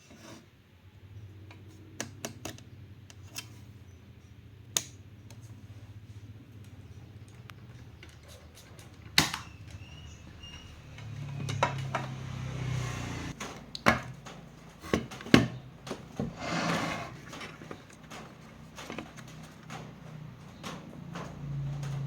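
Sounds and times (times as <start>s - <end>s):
tools and parts clicking on workbench: 1.5s - 3.7s, 7.2s - 12.7s, 13.3s - 22.0s.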